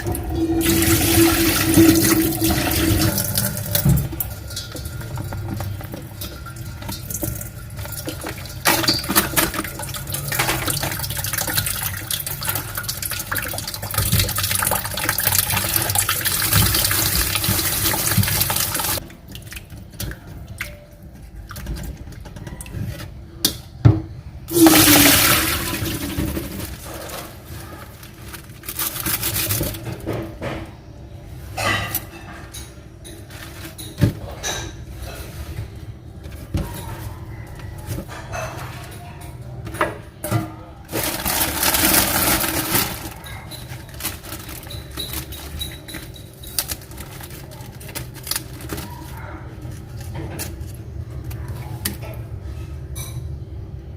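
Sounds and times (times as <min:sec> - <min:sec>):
water running from tap: 0:00.0 - 0:19.0
splashing and knocking: 0:00.0 - 0:23.2, 0:24.5 - 0:30.7.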